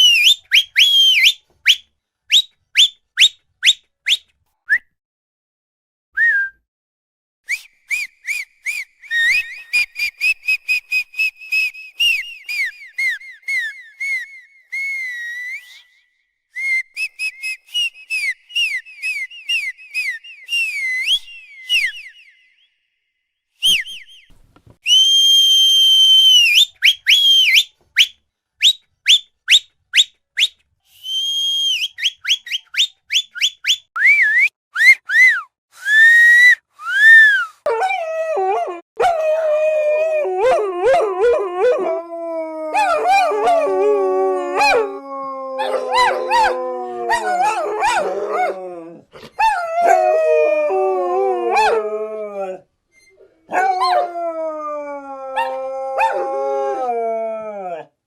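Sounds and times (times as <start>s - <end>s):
high whistle-like squeaks: 7.5s - 23.0s, 23.6s - 37.6s, 52.9s - 53.4s
dogs howling: 37.6s - 52.6s, 53.3s - 57.9s.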